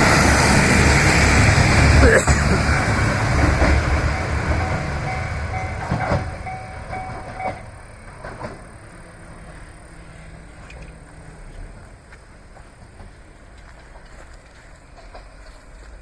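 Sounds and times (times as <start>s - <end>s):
diesel train rumble: 0.0s - 16.0s
train wheels clunking over rails: 0.0s - 16.0s
crossing warning bell ringing: 2.6s - 7.9s.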